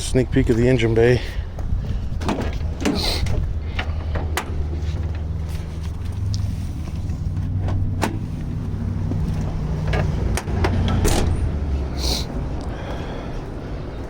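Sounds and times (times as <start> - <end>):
car hood clicks and clunks: 7.5 - 8.3.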